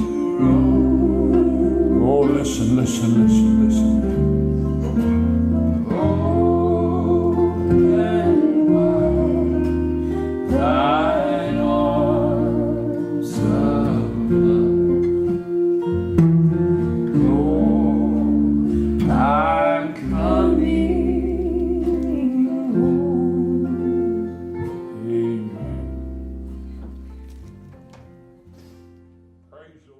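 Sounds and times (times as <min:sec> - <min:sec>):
person singing gospel song: 0:00.0 - 0:04.1, 0:05.8 - 0:15.6, 0:17.0 - 0:26.0
instrumental accompaniment: 0:00.0 - 0:29.5.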